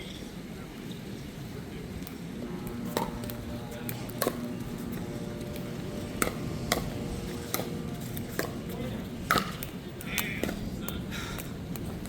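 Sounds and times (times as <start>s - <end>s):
paddles striking ball: 2.6s - 12.0s.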